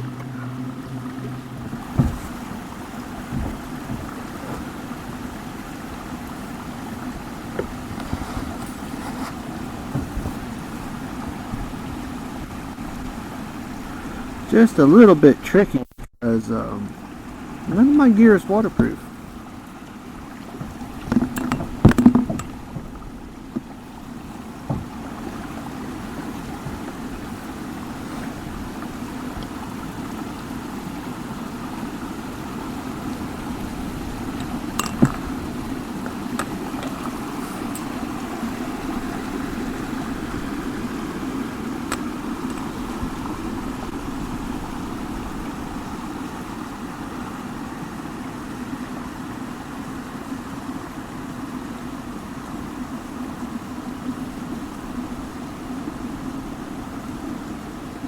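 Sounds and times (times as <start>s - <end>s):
waterfall rushing: 0.0s - 15.7s, 16.3s - 50.1s
sharp knocks: 1.6s - 2.5s, 3.3s - 4.7s, 20.6s - 23.0s.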